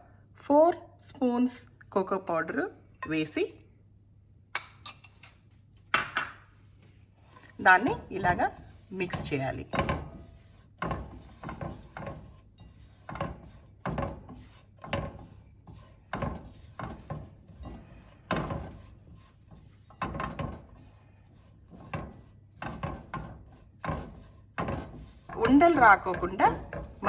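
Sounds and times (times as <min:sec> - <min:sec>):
spoon scraping a pan: 0:07.2 - 0:27.0.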